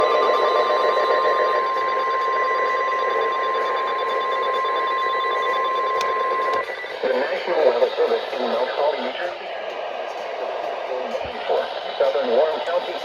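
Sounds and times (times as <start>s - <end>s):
steady alarm tone: 0.0s - 13.0s
radio static hiss: 5.5s - 13.0s.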